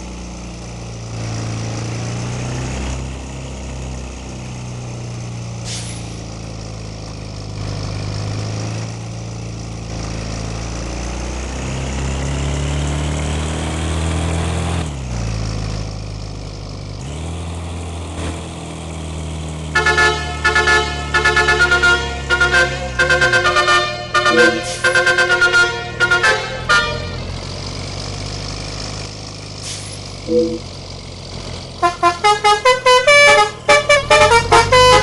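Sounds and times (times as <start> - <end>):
bus engine running: 0.0 - 35.0
multi-tone bus horn tune: 19.7 - 27.4, 30.3 - 30.6, 31.8 - 35.0.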